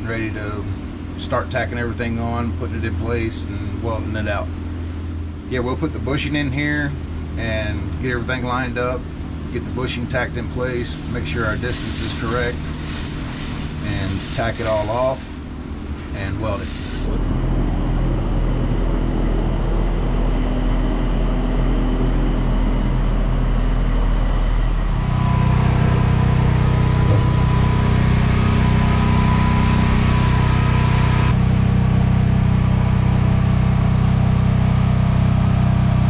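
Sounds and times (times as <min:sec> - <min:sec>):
machine drone: 0:10.4 - 0:35.4
thin high whine: 0:10.7 - 0:17.4, 0:24.6 - 0:32.2.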